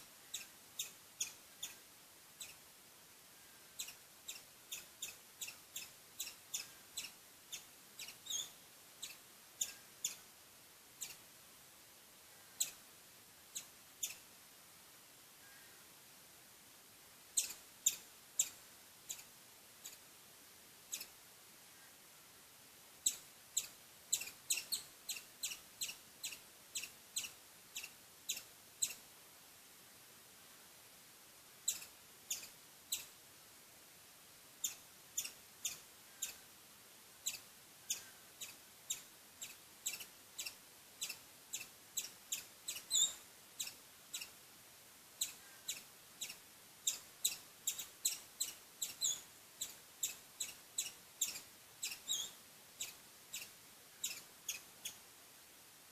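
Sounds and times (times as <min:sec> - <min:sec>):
squirrel chirping: 0:00.2 - 0:02.6, 0:03.7 - 0:10.3, 0:11.0 - 0:11.3, 0:12.5 - 0:12.8, 0:13.5 - 0:14.3, 0:17.4 - 0:20.0, 0:20.9 - 0:21.2, 0:23.0 - 0:29.0, 0:31.6 - 0:33.2, 0:34.6 - 0:36.5, 0:37.2 - 0:44.4, 0:45.2 - 0:55.0.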